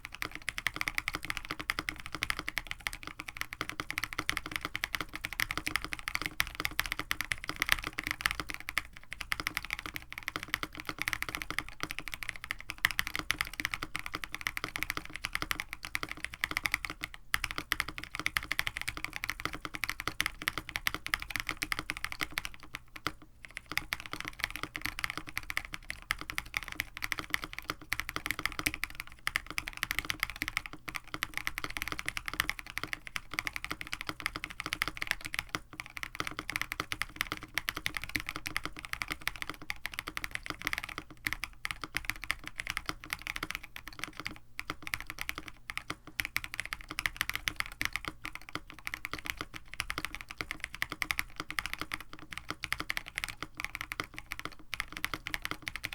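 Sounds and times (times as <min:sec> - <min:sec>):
mechanical keyboard typing: 0:00.0 - 0:55.9.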